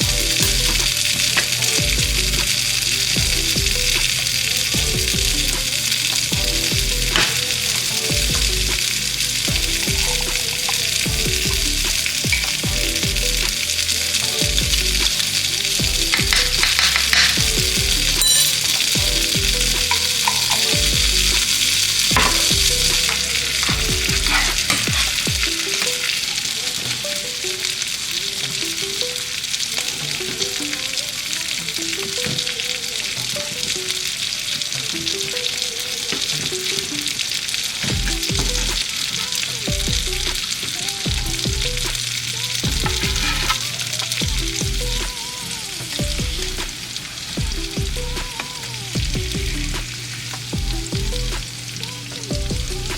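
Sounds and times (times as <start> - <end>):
background music with bass line: 0.0 - 25.9, 37.9 - 38.9, 39.7 - 45.3, 46.0 - 52.9
food sizzling in frying pan: 0.2 - 39.7, 42.0 - 44.5, 46.7 - 52.4.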